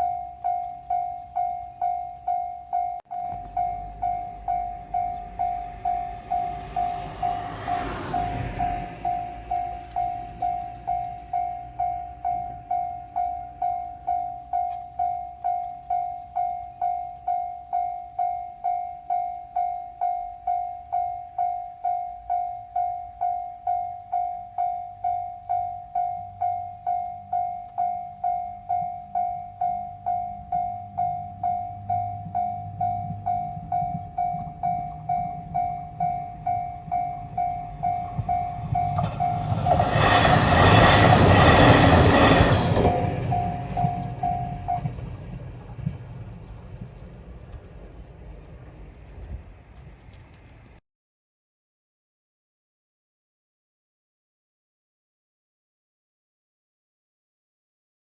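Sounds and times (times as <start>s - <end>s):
level-crossing warning bell ringing: 0.0s - 46.4s.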